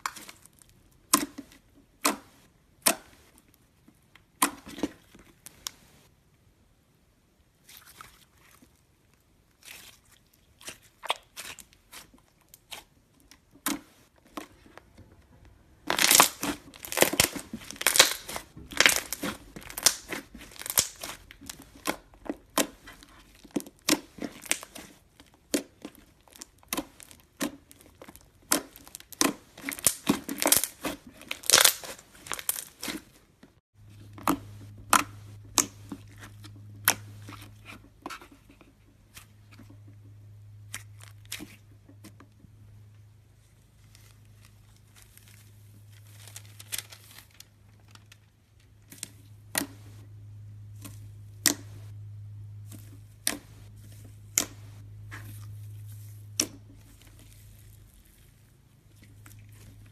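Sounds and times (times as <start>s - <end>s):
low steady hum: 0.0s - 59.9s
slime clicking and popping: 15.9s - 33.0s.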